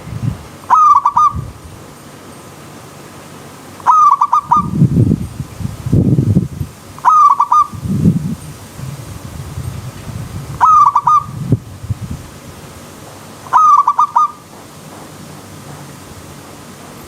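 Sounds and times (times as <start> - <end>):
dove cooing: 0.7 - 1.4, 3.8 - 4.8, 7.0 - 7.8, 10.6 - 11.4, 13.5 - 14.4.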